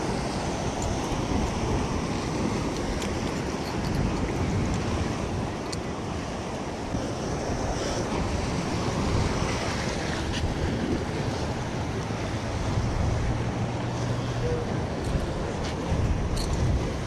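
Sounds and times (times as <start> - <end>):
waves washing against rocks: 0.0 - 17.0
wind buffeting microphone: 0.0 - 17.0.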